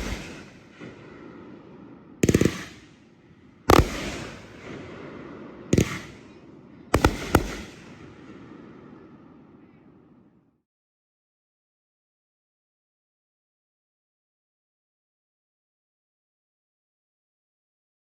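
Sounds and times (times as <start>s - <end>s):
firework bangs: 0.0s - 3.0s, 3.6s - 9.1s
rattle of firework cracks: 7.0s - 7.8s.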